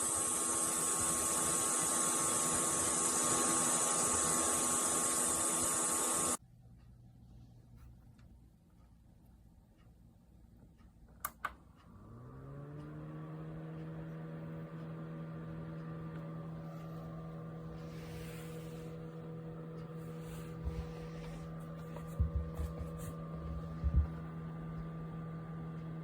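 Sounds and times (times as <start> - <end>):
fan motor humming: 0.0 - 6.4, 11.8 - 26.0.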